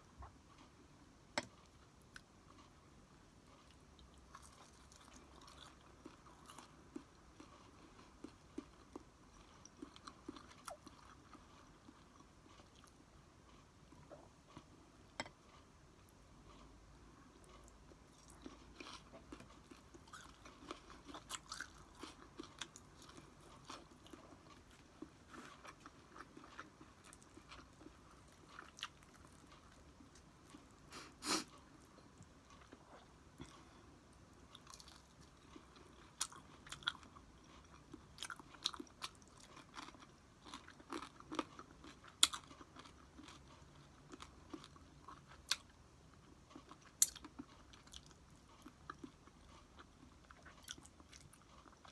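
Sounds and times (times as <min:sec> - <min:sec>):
person chewing and eating: 0:00.0 - 0:51.9.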